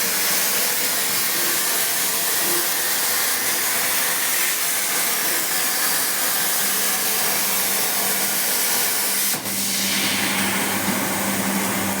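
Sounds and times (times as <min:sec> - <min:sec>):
plasma torch hissing: 0:09.3 - 0:12.0.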